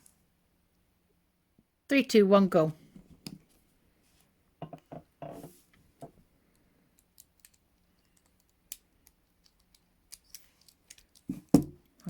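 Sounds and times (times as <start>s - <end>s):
handcuff metallic clicks: 7.0s - 11.3s.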